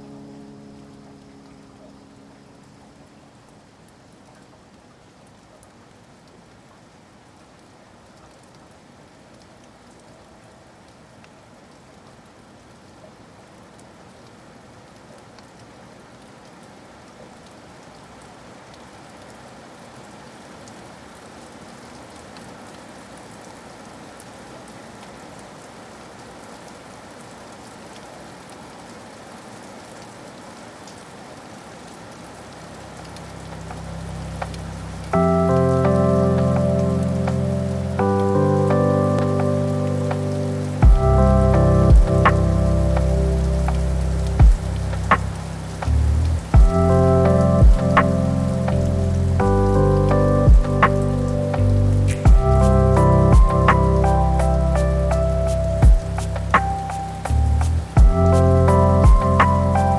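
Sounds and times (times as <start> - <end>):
steady rain patter: 0.0 - 59.9
music with low bass note: 40.8 - 59.9.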